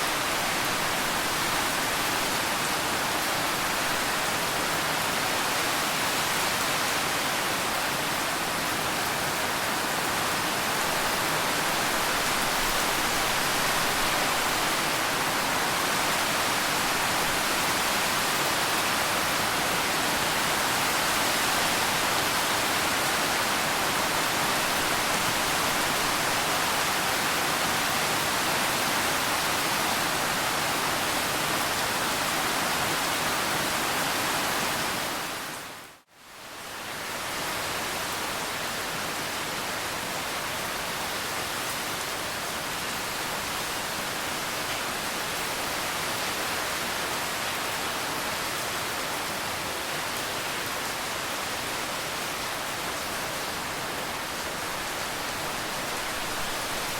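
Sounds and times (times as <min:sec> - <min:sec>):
steady rain: 0:00.0 - 0:56.9.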